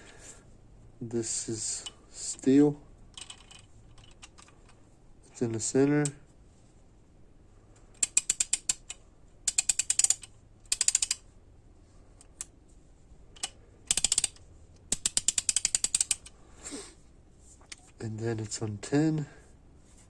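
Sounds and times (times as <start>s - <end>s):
torque wrench ratcheting clicks: 8.0s - 11.2s, 13.4s - 16.3s.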